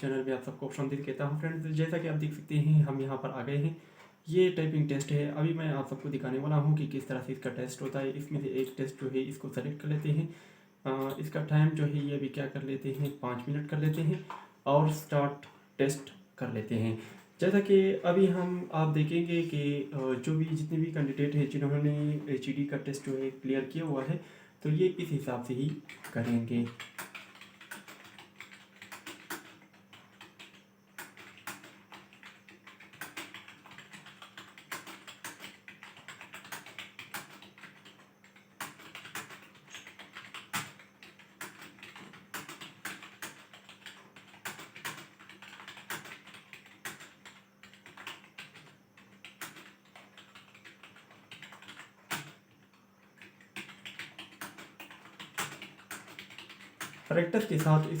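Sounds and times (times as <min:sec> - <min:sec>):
faint steady hum: 0:00.0 - 0:58.0.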